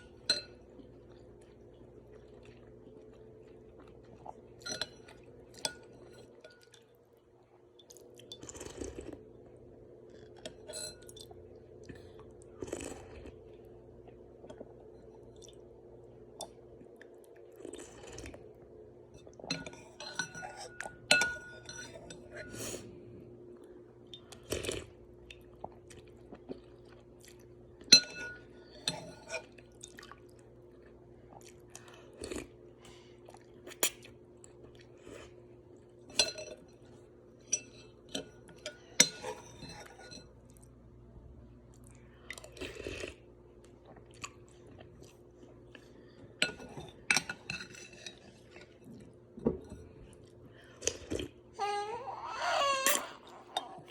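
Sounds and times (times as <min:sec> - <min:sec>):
utensils clinking against bowl: 0:04.6 - 0:06.8, 0:19.2 - 0:22.6, 0:27.9 - 0:29.5, 0:37.4 - 0:40.4, 0:46.4 - 0:48.6.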